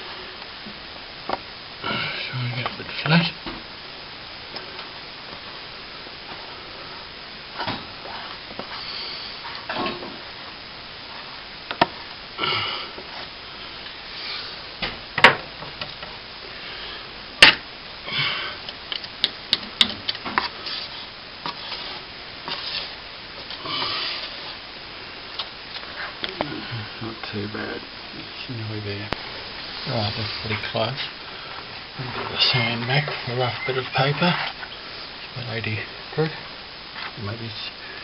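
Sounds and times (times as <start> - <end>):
plastering tool scraping: 20.4 - 23.0.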